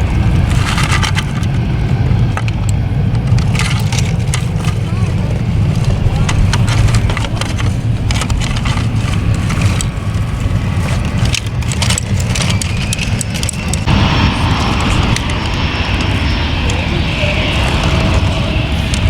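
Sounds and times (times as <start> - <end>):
airplane passing: 0.0 - 19.0
steady low rumble: 0.0 - 19.0
toy trucks clicking in gravel: 0.4 - 1.6, 2.2 - 13.9.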